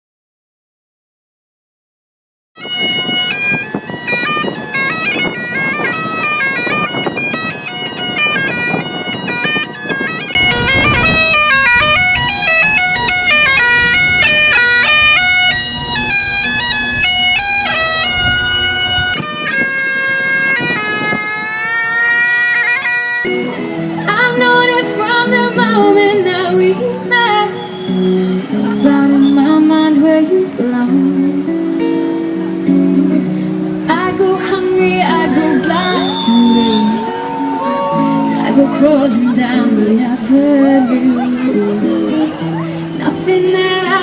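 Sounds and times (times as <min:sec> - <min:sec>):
bagpipes playing a melody: 0:02.6 - 0:25.1, 0:35.0 - 0:39.7.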